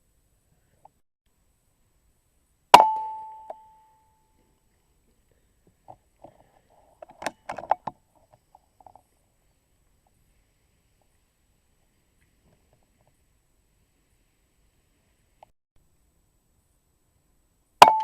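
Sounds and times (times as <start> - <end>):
airgun shot with metallic ring: 2.8 - 3.9
small clicks and knocks: 5.8 - 9.1.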